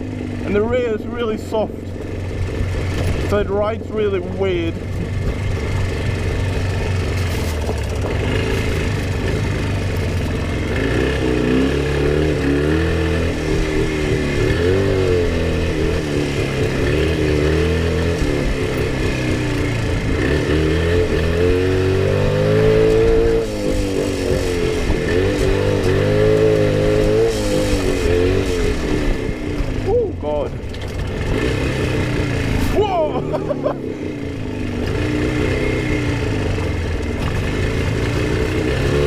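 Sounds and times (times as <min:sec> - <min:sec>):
motorcycle engine revving: 0:00.0 - 0:39.0
person speaking: 0:32.7 - 0:33.8.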